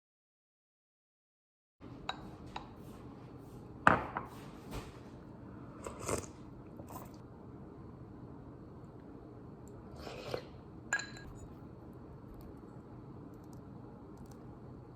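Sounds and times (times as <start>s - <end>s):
dishes and utensils clinking: 10.0s - 11.4s.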